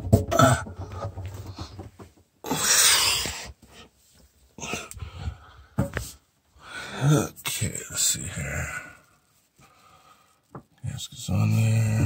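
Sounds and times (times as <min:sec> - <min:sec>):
man breathing heavily: 0:04.6 - 0:05.9, 0:06.6 - 0:07.1, 0:09.6 - 0:10.5.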